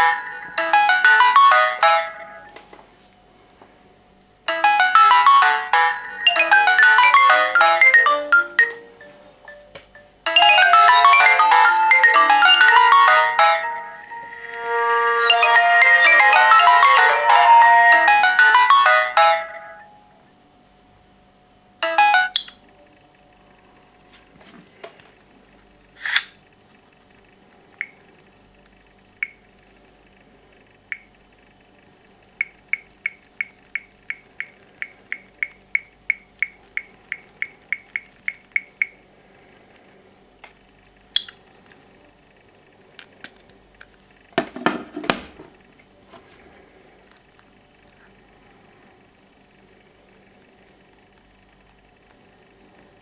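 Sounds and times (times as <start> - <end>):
smartphone beeping: 0.0 - 2.5, 4.5 - 20.0, 21.8 - 22.6, 32.4 - 39.0.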